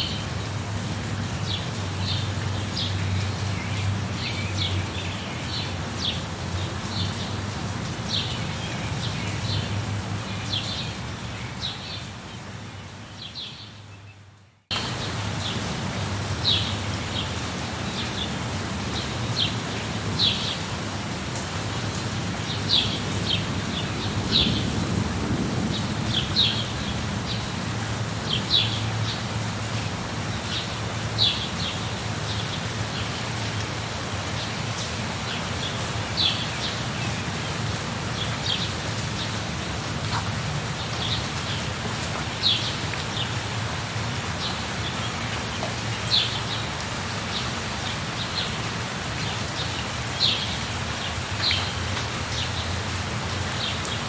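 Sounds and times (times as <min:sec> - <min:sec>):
steady rain: 0:00.0 - 0:54.0
low thunder rumble: 0:23.4 - 0:27.6.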